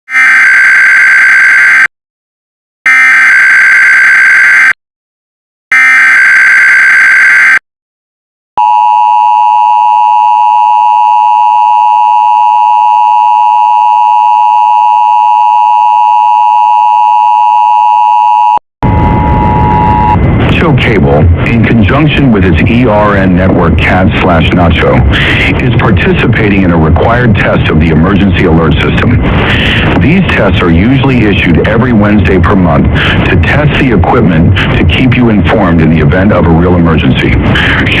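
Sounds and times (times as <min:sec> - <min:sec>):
two-tone attention signal: 0:08.6 - 0:20.2
noisy sound: 0:18.8 - 0:38.0.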